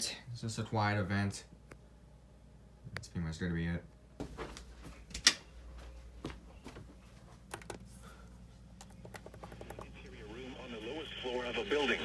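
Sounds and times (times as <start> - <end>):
low steady hum: 0.0 - 12.0
keyboard and mouse clicks: 8.8 - 9.9.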